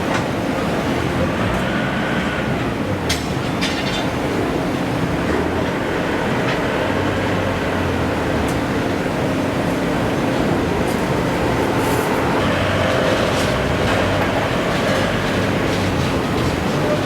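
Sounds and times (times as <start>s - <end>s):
heavy machinery rumble: 0.0s - 17.0s.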